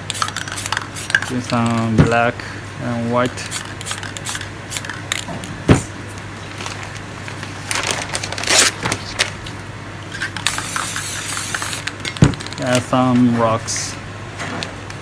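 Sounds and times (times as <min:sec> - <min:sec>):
cans clicking and tapping: 0:00.0 - 0:01.9
spray paint cans hissing: 0:00.0 - 0:01.9, 0:03.4 - 0:06.2, 0:10.1 - 0:12.8.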